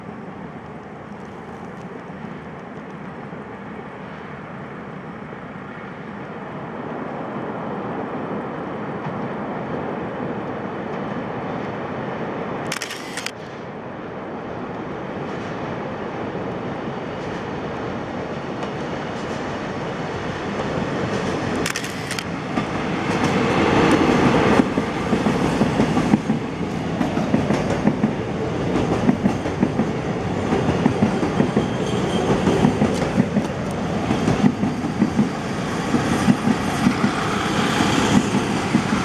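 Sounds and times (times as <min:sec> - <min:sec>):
camera shutter click: 0:12.7 - 0:13.5, 0:21.7 - 0:22.3
diesel locomotive engines rumbling: 0:13.3 - 0:39.0.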